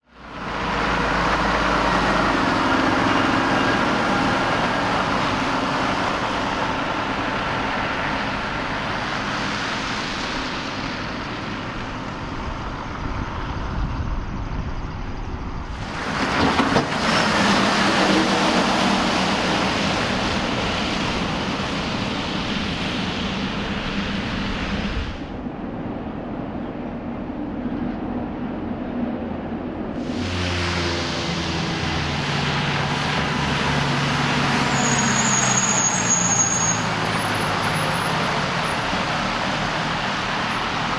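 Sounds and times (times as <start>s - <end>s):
vehicle engines running: 0.0s - 40.9s
tyre hiss on snowy road: 3.9s - 12.2s, 15.7s - 25.4s, 30.0s - 40.9s.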